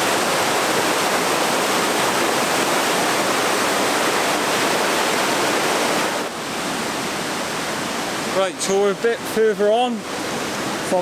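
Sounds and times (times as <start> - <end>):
river water rushing: 0.0 - 11.0.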